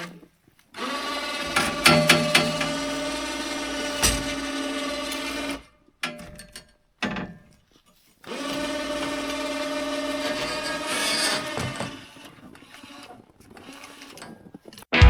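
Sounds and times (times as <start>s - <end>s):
small electric motor running: 8.4s - 13.1s.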